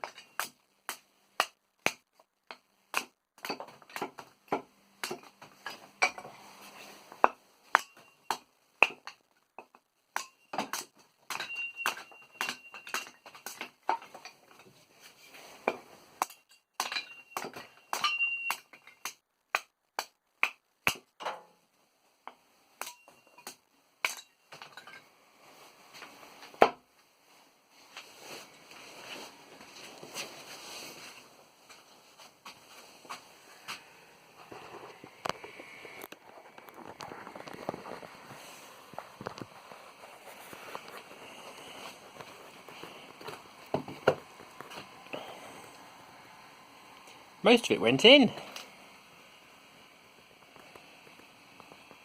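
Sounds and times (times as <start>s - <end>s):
steel blade ringing: 11.3s - 13.1s, 16.3s - 18.8s.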